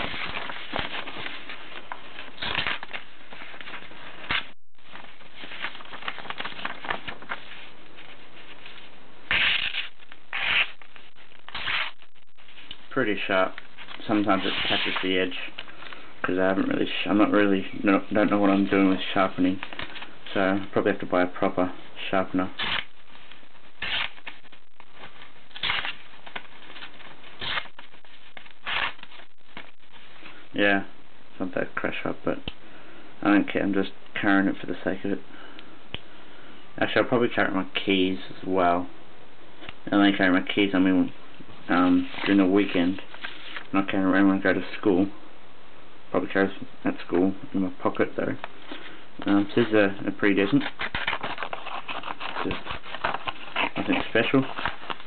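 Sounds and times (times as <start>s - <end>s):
paper rustling: 0.0s - 16.1s, 18.1s - 20.9s, 22.4s - 30.4s, 41.8s - 43.9s, 48.6s - 55.0s.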